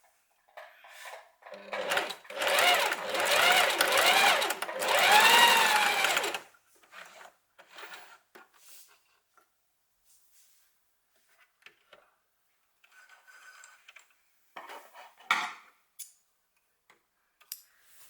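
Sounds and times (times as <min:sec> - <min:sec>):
sewing machine motor whine: 0:01.5 - 0:06.4.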